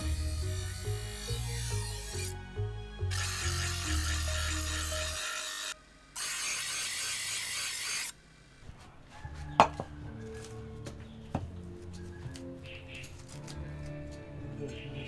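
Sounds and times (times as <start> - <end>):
abrasive rubbing on knife blade: 0.0 - 2.4, 3.1 - 8.1
background music: 0.0 - 6.4, 9.6 - 15.0.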